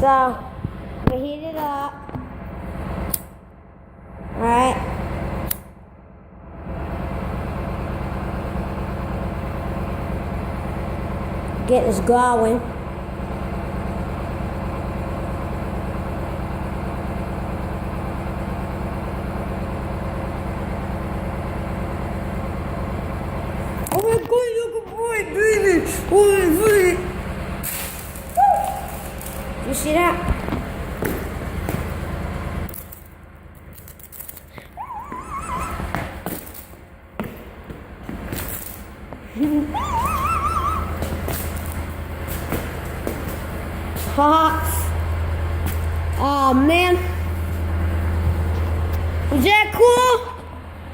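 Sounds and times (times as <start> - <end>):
engine idling: 2.2 - 50.9
wavering whistle-like tone: 28.4 - 29.0, 34.8 - 36.0, 39.6 - 41.1.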